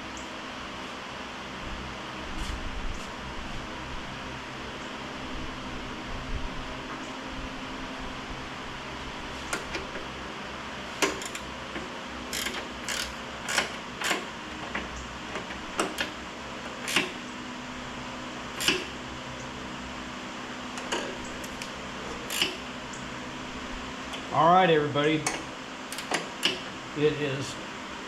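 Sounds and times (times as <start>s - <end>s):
steady hum: 0.0s - 28.0s
metal parts clicking and knocking: 11.0s - 11.4s, 12.3s - 14.2s.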